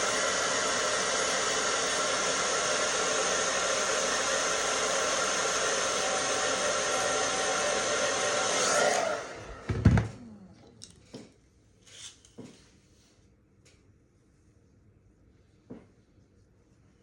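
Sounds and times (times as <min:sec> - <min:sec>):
hair dryer blowing: 0:00.0 - 0:10.5.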